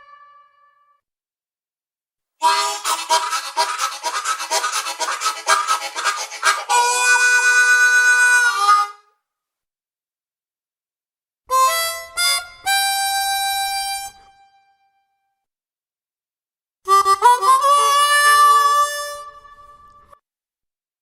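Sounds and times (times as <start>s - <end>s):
harmonica notes: 2.4s - 9.1s, 11.5s - 14.7s, 16.9s - 20.2s
harmonica playing chords: 2.4s - 9.1s, 11.5s - 14.7s, 16.9s - 20.0s.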